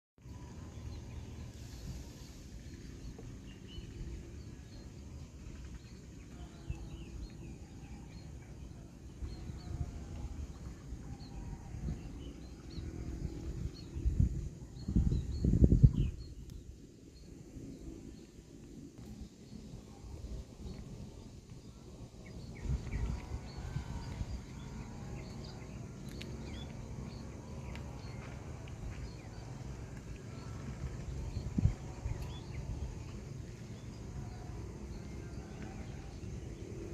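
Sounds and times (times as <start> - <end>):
low wind rumble: 0.2 - 36.9
small birds chirping: 14.8 - 36.8.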